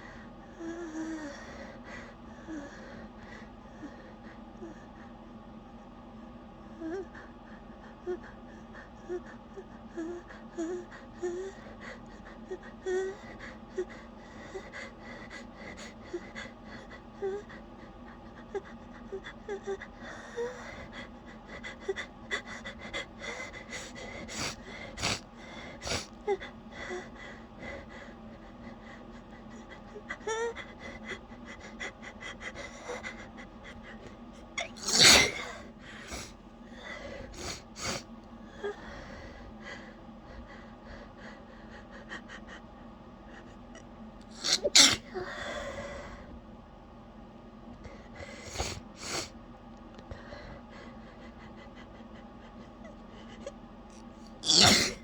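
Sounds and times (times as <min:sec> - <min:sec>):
gasping breaths: 0:06.9 - 0:42.7, 0:44.4 - 0:46.4
woman sneezing: 0:34.7 - 0:35.5, 0:44.4 - 0:45.1, 0:54.5 - 0:55.0.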